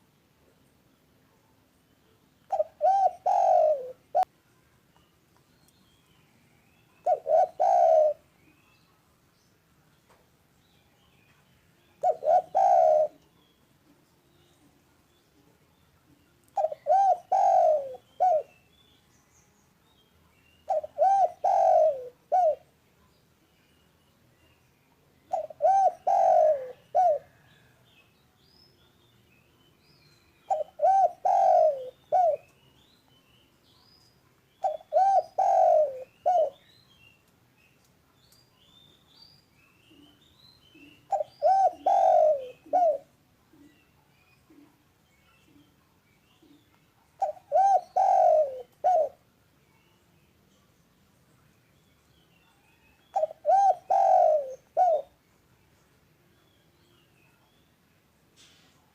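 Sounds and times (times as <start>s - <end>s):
small birds chirping: 0.0s - 58.9s
dove cooing: 2.5s - 4.3s, 7.0s - 8.3s, 12.0s - 13.2s, 16.6s - 18.5s, 20.7s - 22.7s, 25.3s - 27.7s, 30.5s - 32.5s, 34.6s - 36.7s, 40.0s - 43.8s, 47.2s - 49.2s, 53.1s - 55.2s.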